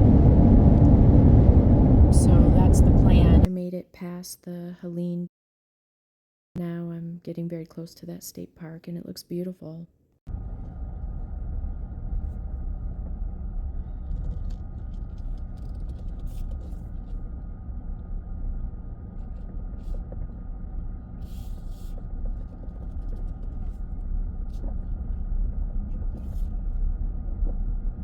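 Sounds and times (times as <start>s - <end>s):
tyres and engine rumble: 0.0s - 3.5s, 10.3s - 28.0s.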